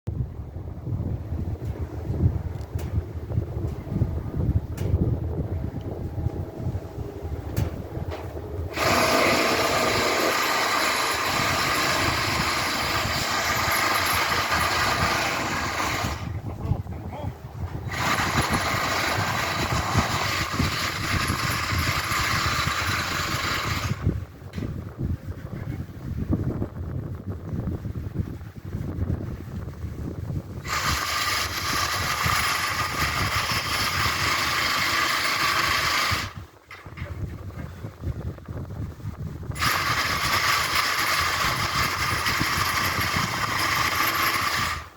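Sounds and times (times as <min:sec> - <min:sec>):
low rumble: 0:00.1 - 0:23.0.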